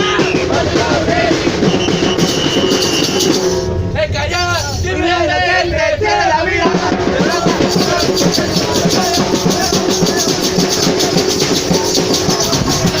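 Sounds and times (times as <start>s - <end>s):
drums and shakers music: 0.0s - 4.9s, 6.1s - 13.0s
held tone: 1.6s - 4.0s.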